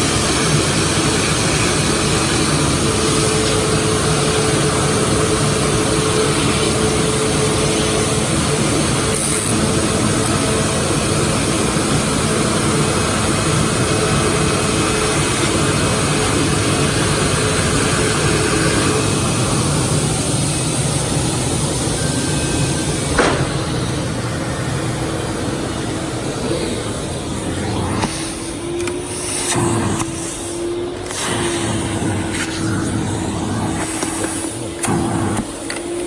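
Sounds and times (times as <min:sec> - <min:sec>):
sharp knock: 0:23.1 - 0:23.6.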